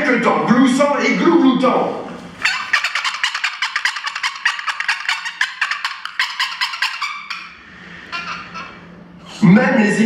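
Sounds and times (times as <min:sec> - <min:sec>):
turkey gobbling and clucking: 0:02.4 - 0:09.0.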